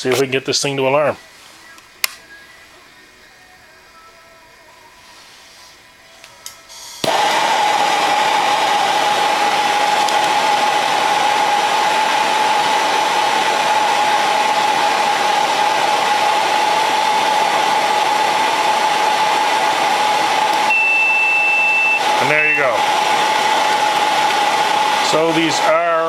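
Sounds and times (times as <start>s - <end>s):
heat gun running: 7.0s - 26.0s.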